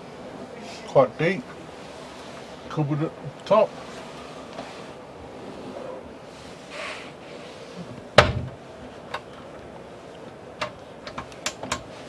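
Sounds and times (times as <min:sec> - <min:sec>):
cupboard door banging shut: 0:08.2 - 0:08.6.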